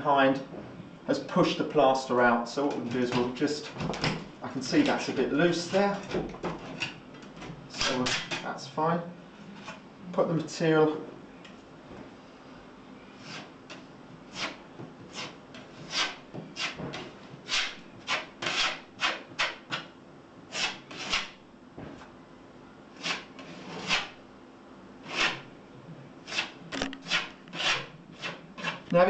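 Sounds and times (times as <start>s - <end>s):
filler spreader scraping plasterboard: 23.0s - 24.2s, 25.0s - 25.4s, 26.2s - 28.8s.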